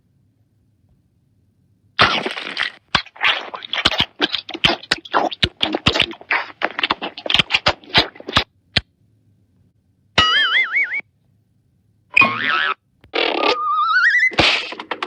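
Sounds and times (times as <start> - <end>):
cartoon knocks and clatters: 2.0 - 8.5, 14.2 - 15.0.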